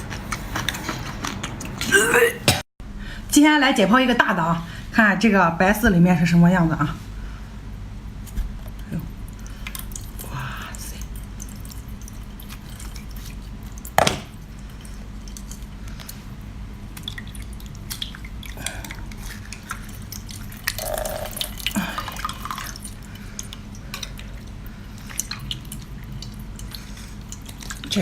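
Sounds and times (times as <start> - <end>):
dripping liquid: 9.3 - 16.2, 16.9 - 27.9.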